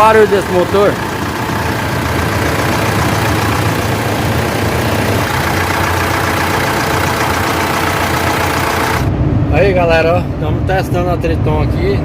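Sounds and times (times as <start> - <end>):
diesel engine running: 0.0 - 9.5.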